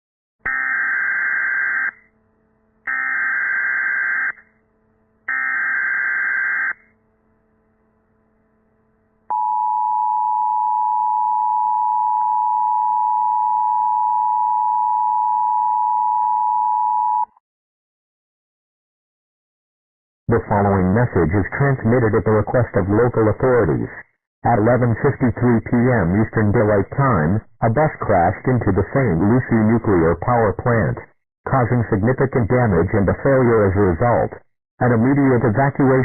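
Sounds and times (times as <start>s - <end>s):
two-tone attention signal: 9.3s - 17.3s.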